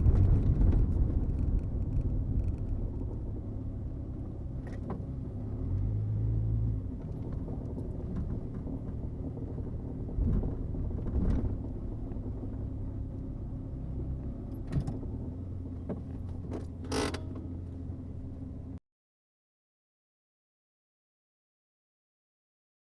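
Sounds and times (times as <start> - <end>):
car low rumble: 0.0 - 18.8
car creaks: 14.5 - 17.6.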